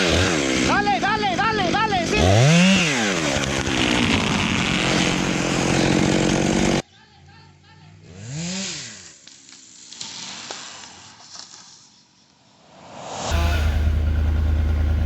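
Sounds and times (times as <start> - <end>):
chainsaw at high revs: 0.0 - 6.8, 8.1 - 9.3, 13.3 - 14.3
brief rising and falling tone: 12.9 - 15.0.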